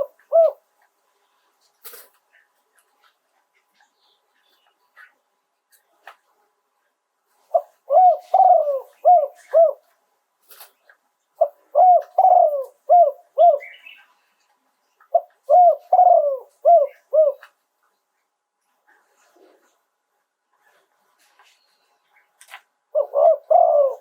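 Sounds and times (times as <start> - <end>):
dove cooing: 0.0 - 0.7, 7.5 - 9.9, 11.4 - 14.0, 15.1 - 17.6, 22.9 - 24.0.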